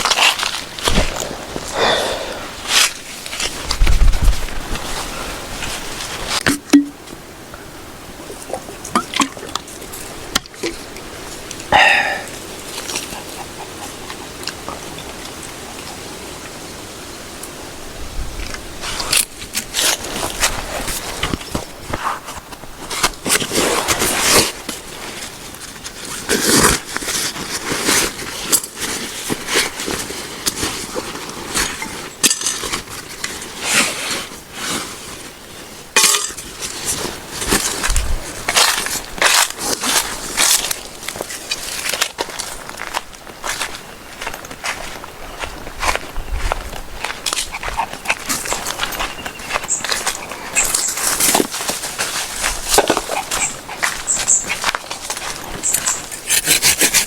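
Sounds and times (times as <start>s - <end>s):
rustling and scraping handling: 0.0s - 7.2s, 9.2s - 16.1s, 18.4s - 57.0s.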